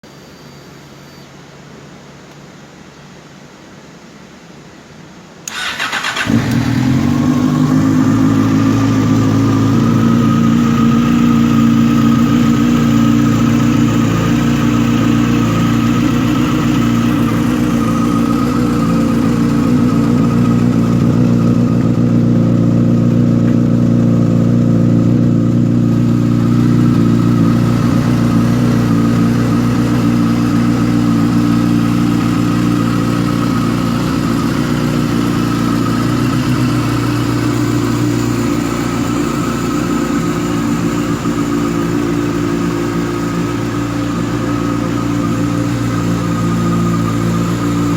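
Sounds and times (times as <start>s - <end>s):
motorcycle engine starting and idling: 5.4s - 47.9s.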